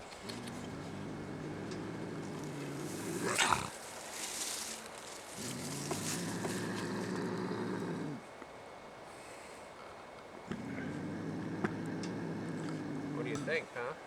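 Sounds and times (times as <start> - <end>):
bobcat growling: 0.0 - 3.8, 5.3 - 8.3, 9.8 - 13.6
bobcat hissing: 0.1 - 3.8, 5.3 - 8.3, 9.2 - 13.6
bobcat crying: 0.3 - 3.8.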